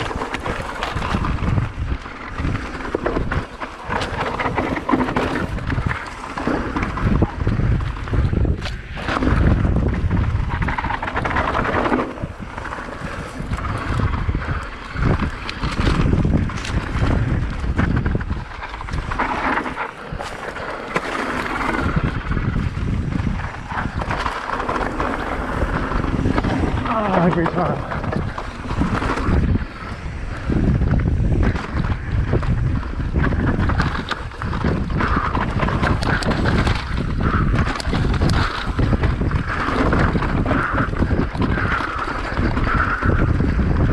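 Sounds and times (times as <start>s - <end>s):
bike knocks and rattles: 0.0s - 29.7s
tyres rumbling over rocky trail: 0.0s - 43.9s
wind buffeting microphone: 0.0s - 43.9s.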